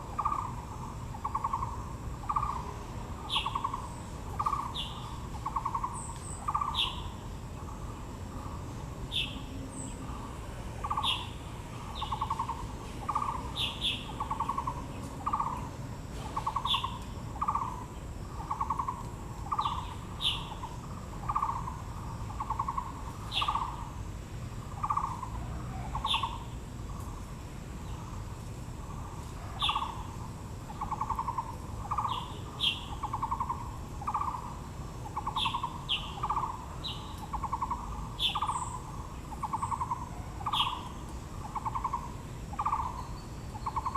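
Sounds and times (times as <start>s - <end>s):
bird low hooting: 0.0s - 43.9s
bird chirps: 0.1s - 10.2s, 10.8s - 15.7s, 16.3s - 23.9s, 24.7s - 27.2s, 28.9s - 43.9s.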